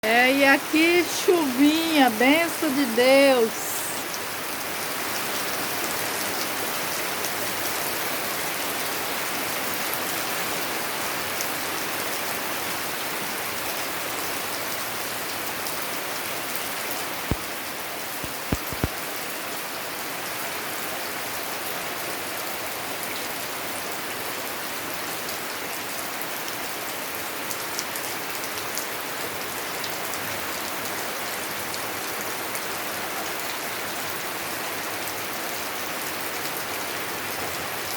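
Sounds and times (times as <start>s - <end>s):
rain falling: 0.0s - 37.9s
sharp clicks: 18.2s - 18.9s.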